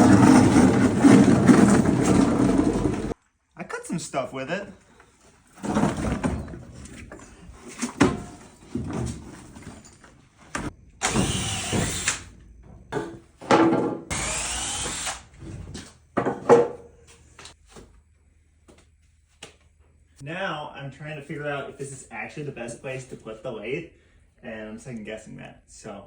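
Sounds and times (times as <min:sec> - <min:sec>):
power tool running: 0:00.0 - 0:03.1, 0:11.0 - 0:12.3, 0:14.1 - 0:15.3.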